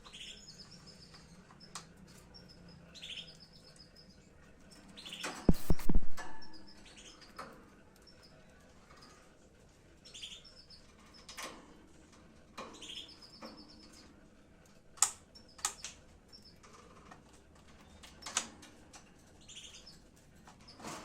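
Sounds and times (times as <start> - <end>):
lovebirds chirping: 0.0 - 7.4, 10.0 - 11.3.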